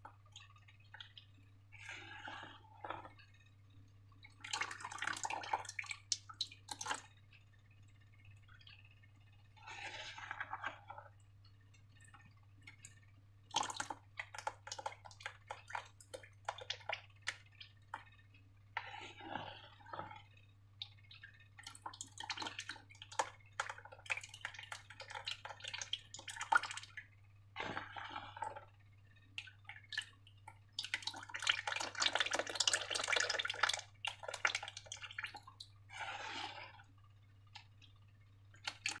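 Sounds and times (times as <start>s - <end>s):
slime squelching: 0.0s - 3.3s, 9.6s - 11.2s, 18.7s - 36.9s, 37.5s - 39.0s
low electrical hum: 0.0s - 39.0s.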